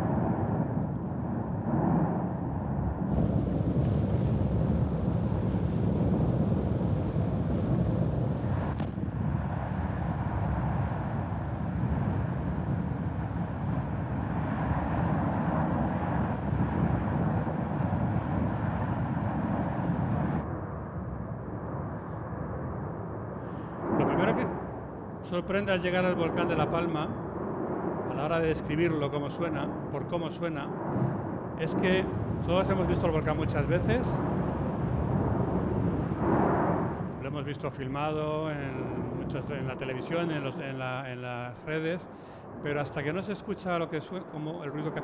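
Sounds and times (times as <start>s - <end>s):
volcano deep roar: 1.6s - 20.4s
sharp crack: 8.5s - 9.2s.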